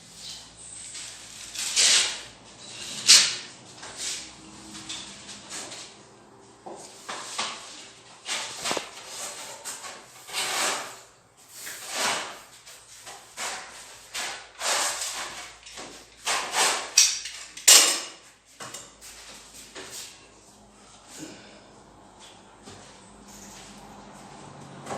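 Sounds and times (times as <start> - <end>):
putty knife scraping wall: 0.2 - 6.0, 7.1 - 17.6.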